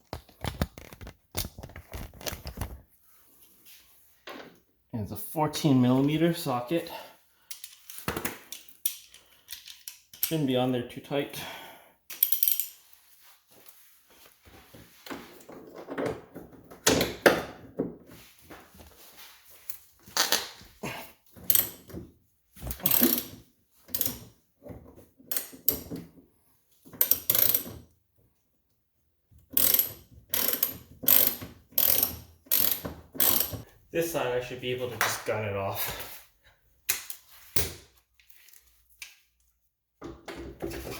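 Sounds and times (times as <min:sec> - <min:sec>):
socket ratchet clicking: 0:27.0 - 0:27.7, 0:29.6 - 0:33.6.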